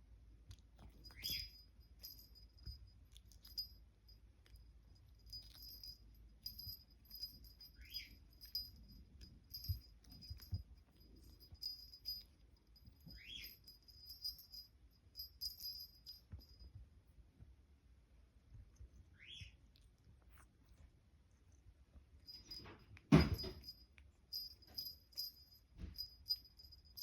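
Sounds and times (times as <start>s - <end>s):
small bell jingling: 0.8s - 16.8s, 22.2s - 27.0s.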